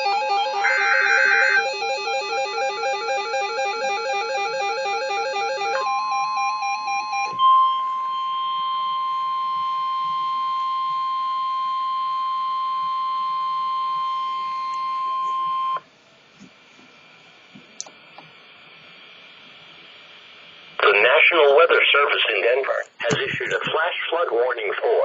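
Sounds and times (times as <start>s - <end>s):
steady alarm tone: 0.0s - 15.8s
faint radio hiss: 14.4s - 25.0s.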